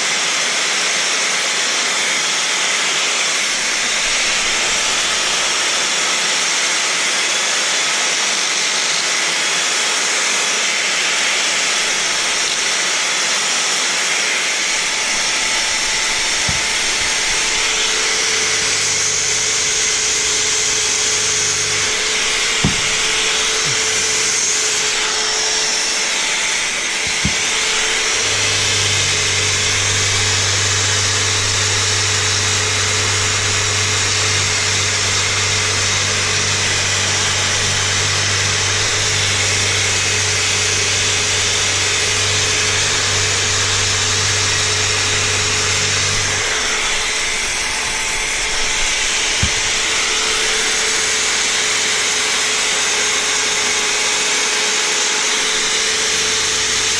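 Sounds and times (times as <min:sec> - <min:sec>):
electric machine whirring: 0:00.0 - 0:56.9
light knocks: 0:14.7 - 0:36.9, 0:42.5 - 0:51.2
low hum: 0:14.7 - 0:51.9.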